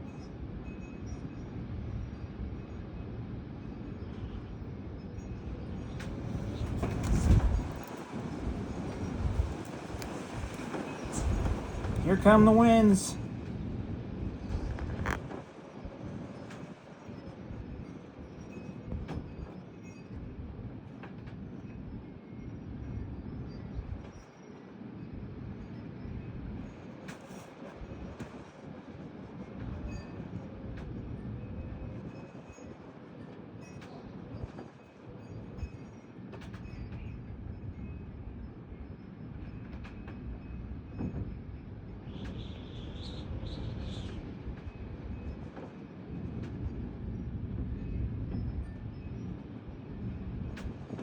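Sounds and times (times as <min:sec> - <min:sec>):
strong wind gusts: 0:01.6 - 0:20.8, 0:36.6 - 0:51.0
wind gusts rumbling: 0:05.6 - 0:16.4.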